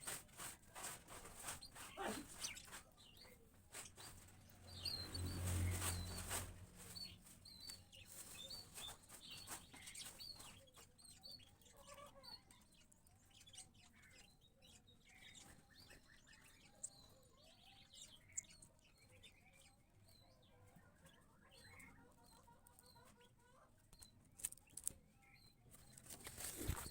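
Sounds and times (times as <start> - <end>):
wing flutters and rustling: 0.0 - 12.0, 25.7 - 26.9
small birds chirping: 0.0 - 26.9.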